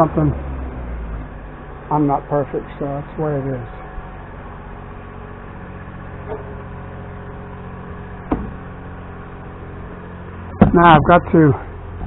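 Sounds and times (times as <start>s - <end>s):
engine droning: 0.0s - 12.0s
sharp knock: 8.3s - 8.6s.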